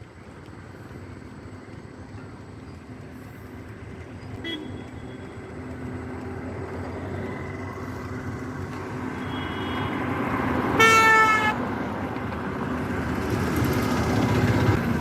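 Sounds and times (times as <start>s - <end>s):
road traffic rumble: 0.0s - 15.0s
vehicle horn: 4.4s - 5.3s, 9.0s - 11.7s.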